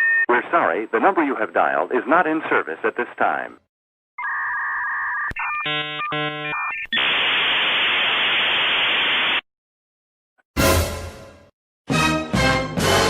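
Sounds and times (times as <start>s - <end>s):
dial-up modem tones: 4.2s - 7.4s
modem screeching hiss: 5.4s - 9.4s.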